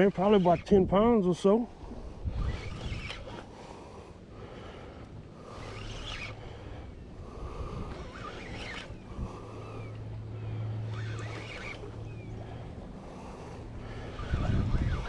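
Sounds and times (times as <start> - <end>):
fishing reel cranking: 0.0 - 15.0
low steady hum: 0.0 - 15.0
wind noise: 1.8 - 3.4, 13.8 - 15.0.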